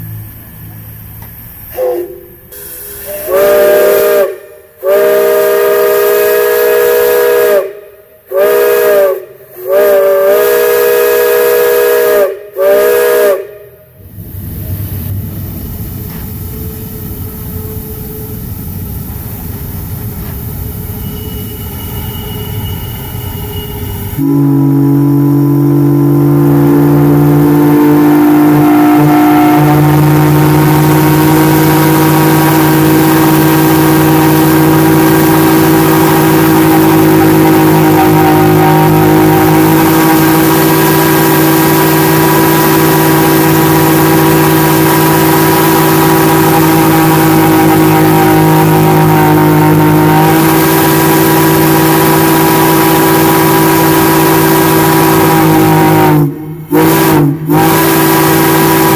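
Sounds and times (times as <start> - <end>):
loud multi-note whistle: 1.7 - 13.7, 20.8 - 58.9
low rumbling noise: 13.6 - 21.6.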